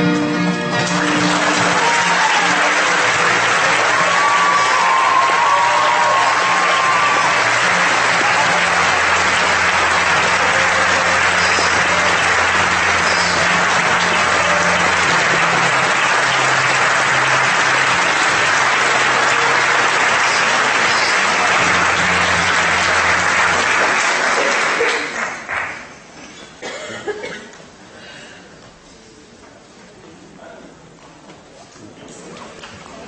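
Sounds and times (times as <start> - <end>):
large audience applauding: 0.5 - 26.0.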